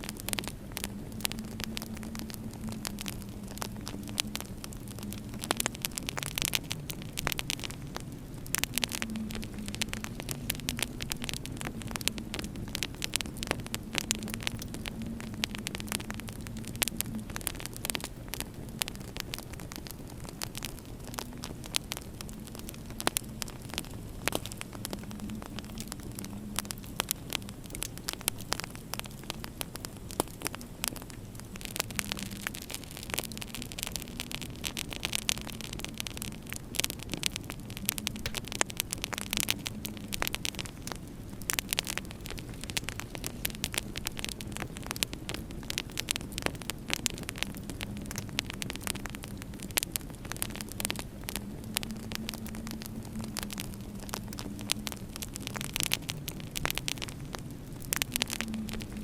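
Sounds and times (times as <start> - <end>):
low steady hum: 0.0 - 59.0
wood fire crackling and popping: 0.0 - 59.0.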